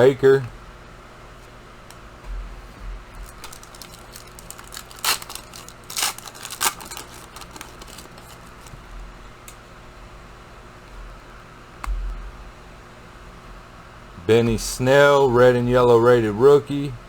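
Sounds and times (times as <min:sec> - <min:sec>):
wrapper crinkling: 0:03.2 - 0:08.8
wrapper ripping: 0:03.2 - 0:08.8.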